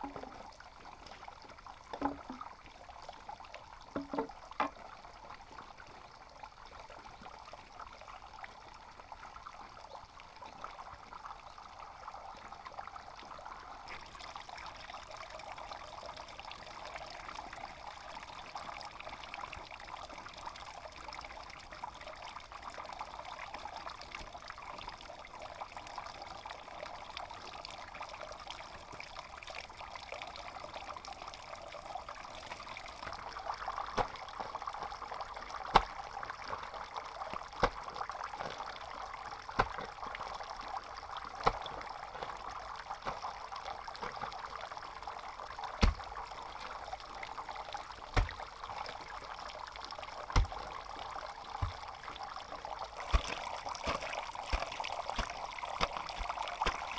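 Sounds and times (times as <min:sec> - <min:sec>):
water trickling and pouring: 0:00.0 - 0:56.9
short sharp knocks: 0:45.8 - 0:46.2, 0:50.4 - 0:50.7.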